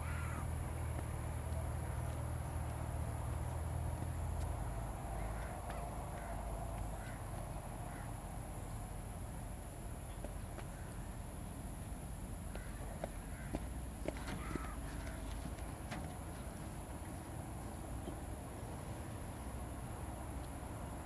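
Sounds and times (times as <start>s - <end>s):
crow cawing: 0.0s - 0.5s, 5.2s - 8.2s, 12.5s - 15.6s.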